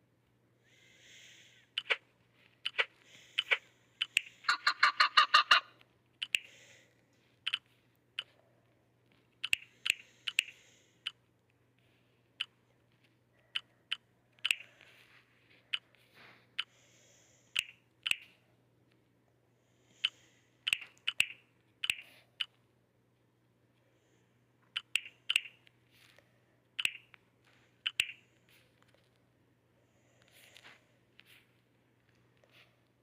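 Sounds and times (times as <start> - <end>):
sharp clicks: 2.6 - 4.5, 6.2 - 6.5, 7.4 - 8.3, 9.4 - 11.2, 13.5 - 14.8, 17.5 - 18.3, 20.0 - 22.6, 24.7 - 25.7, 26.8 - 27.2, 27.8 - 28.2.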